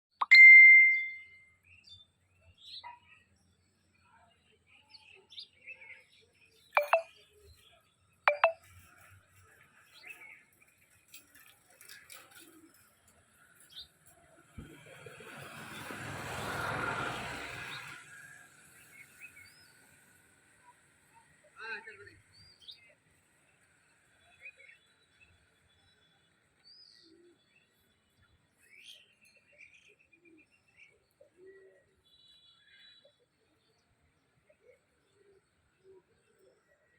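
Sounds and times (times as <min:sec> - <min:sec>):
faint bird chirps: 0:06.8 - 0:07.2, 0:08.3 - 0:08.6.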